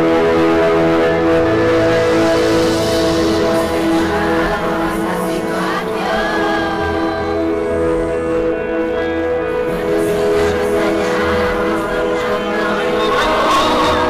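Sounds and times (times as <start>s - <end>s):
person singing: 0.0s - 14.0s
slow ballad music: 0.0s - 14.0s.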